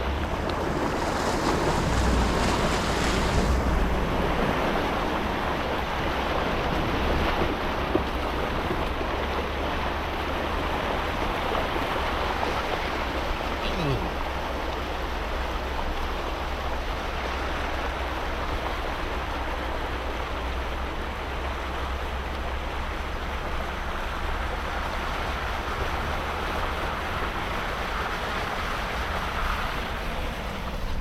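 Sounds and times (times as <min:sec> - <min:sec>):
vehicle driving rushing noise: 0:00.0 - 0:07.7
low rumble: 0:00.0 - 0:08.7.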